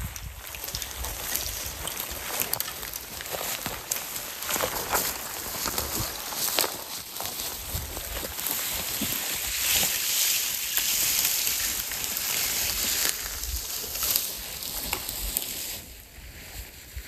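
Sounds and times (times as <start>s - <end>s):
wind rumble on microphone: 0.0s - 2.7s, 7.4s - 9.8s.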